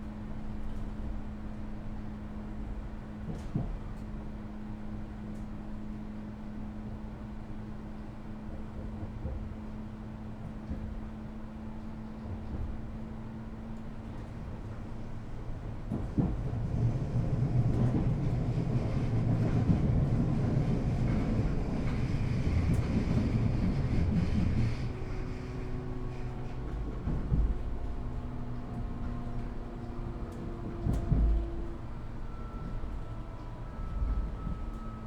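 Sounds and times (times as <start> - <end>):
train wheels rumbling on track: 0.0 - 35.0
train drive tones: 13.7 - 35.0.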